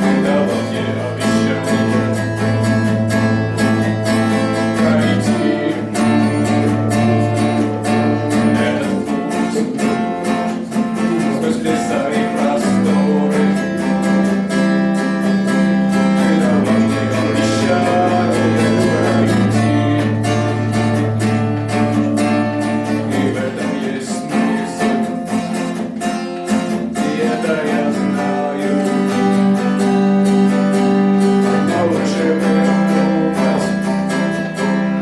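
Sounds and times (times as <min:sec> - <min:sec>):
strummed acoustic guitar: 0:00.0 - 0:35.0
sustained low notes: 0:16.6 - 0:21.7.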